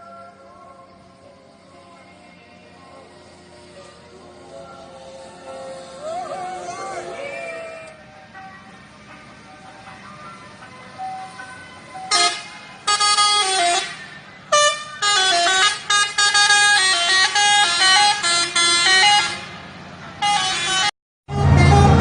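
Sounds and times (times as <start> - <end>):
musical bus horn playing a tune: 12.1 - 22.0.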